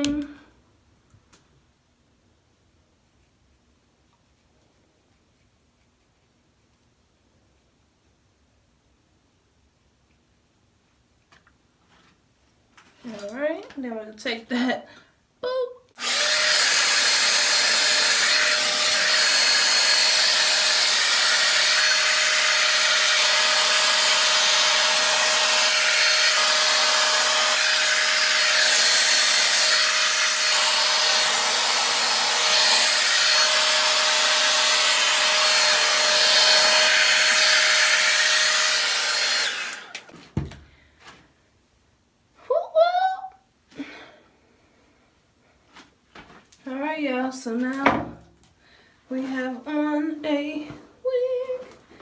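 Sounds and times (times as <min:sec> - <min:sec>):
hair dryer blowing: 0:16.0 - 0:40.1.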